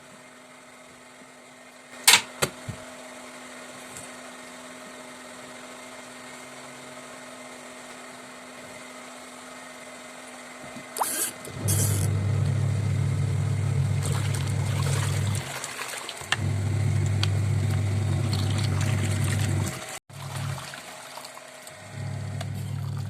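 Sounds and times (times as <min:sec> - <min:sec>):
motor running: 0:10.2 - 0:23.0.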